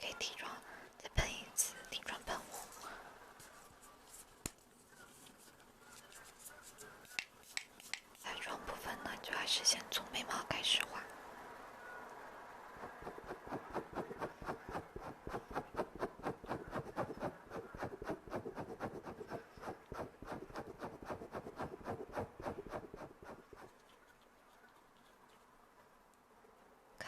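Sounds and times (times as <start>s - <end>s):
scratchy makeup tool strokes: 12.8s - 25.1s.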